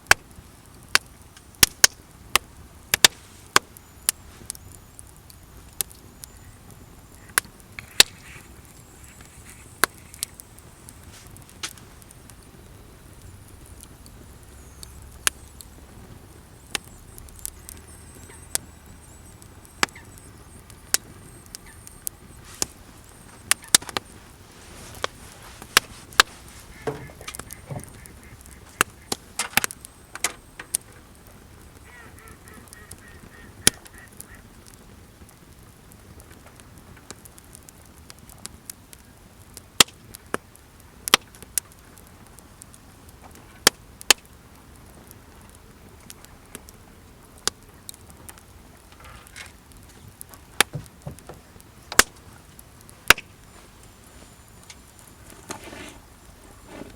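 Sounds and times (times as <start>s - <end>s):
campfire crackling and popping: 0.0s - 56.9s
waterfowl calls: 17.6s - 31.0s, 31.8s - 34.6s.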